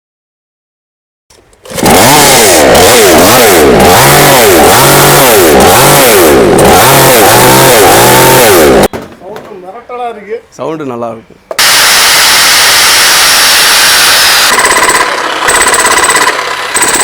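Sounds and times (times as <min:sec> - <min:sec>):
small engine revving: 0:01.6 - 0:08.9, 0:11.6 - 0:17.0.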